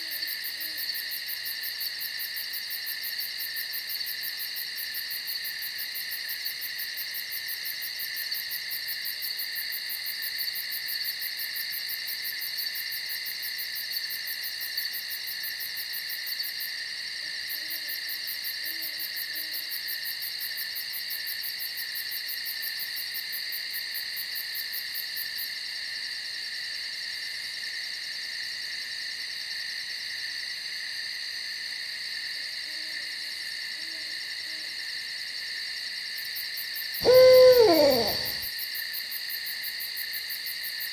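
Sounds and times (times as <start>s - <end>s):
faint owl hoots: 37.0s - 38.4s
insect pulsing trill: 37.0s - 38.4s
insect chorus: 37.0s - 38.5s.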